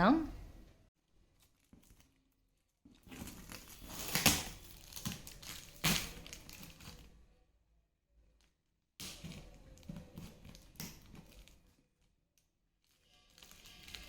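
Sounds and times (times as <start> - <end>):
packaging rustling and crinkling: 1.1 - 7.2, 8.4 - 12.2, 12.8 - 14.0.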